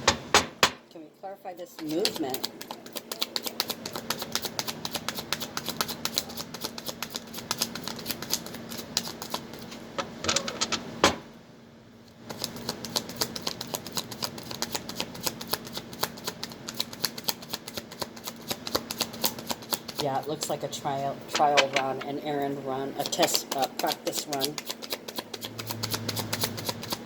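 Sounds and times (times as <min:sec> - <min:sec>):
cards being shuffled: 0:01.8 - 0:09.8, 0:23.1 - 0:27.0.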